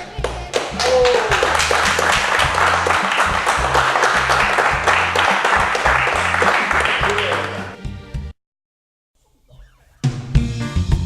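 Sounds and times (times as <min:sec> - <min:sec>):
applause and clapping: 0:00.0 - 0:07.8
music with held bass notes: 0:00.0 - 0:08.3, 0:10.0 - 0:11.0.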